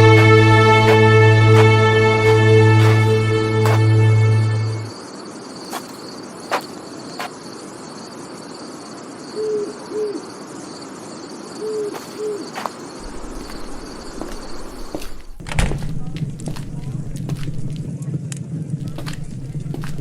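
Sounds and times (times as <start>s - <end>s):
crickets chirping: 0.0s - 20.0s
owl hooting: 9.3s - 10.3s, 11.6s - 15.1s.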